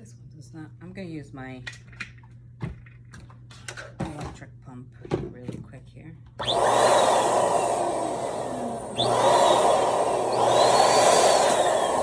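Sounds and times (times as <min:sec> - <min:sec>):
electric balloon pump blowing air: 0:06.4 - 0:12.0.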